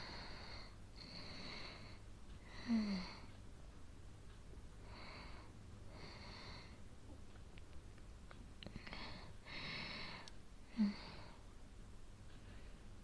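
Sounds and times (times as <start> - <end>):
woman's wheezy breathing: 8.7 - 11.5.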